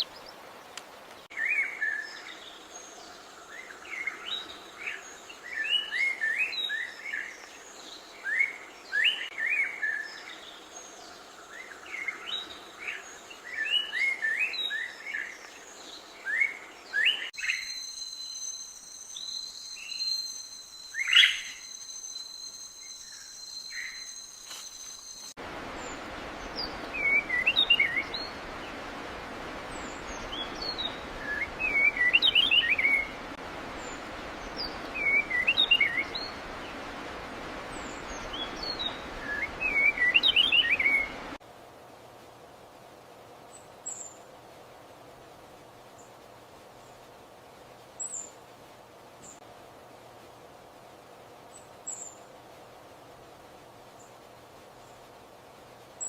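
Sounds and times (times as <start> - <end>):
small birds chirping: 0.0 - 41.4.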